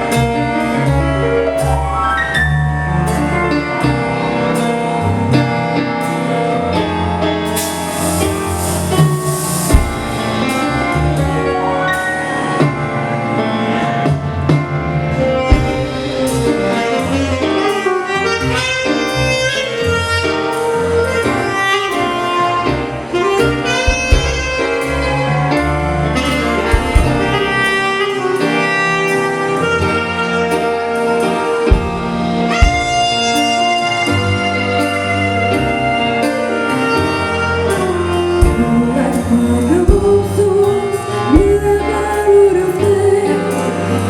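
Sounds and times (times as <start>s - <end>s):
brass instruments: 0.0s - 44.0s
saxophone: 6.7s - 14.4s, 15.1s - 44.0s
drum kit beat: 7.5s - 11.0s, 15.5s - 18.6s, 23.7s - 24.8s, 26.3s - 28.4s, 30.2s - 35.0s, 37.8s - 42.4s.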